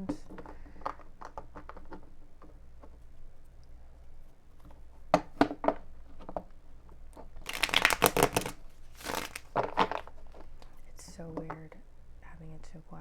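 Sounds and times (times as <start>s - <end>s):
cards being shuffled: 7.4s - 10.5s.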